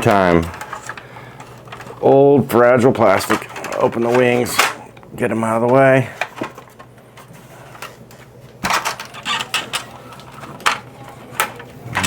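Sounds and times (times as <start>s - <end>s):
plastic toy clicking and scraping: 0.0s - 2.0s, 3.0s - 4.8s, 8.6s - 12.0s.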